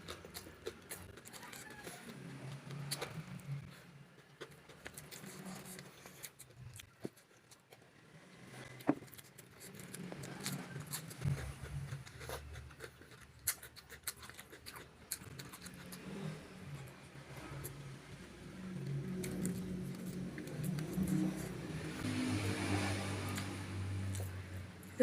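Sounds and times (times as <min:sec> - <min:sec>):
person chewing: 0:00.0 - 0:07.8, 0:08.4 - 0:24.9
crunching vegetables: 0:00.0 - 0:24.7.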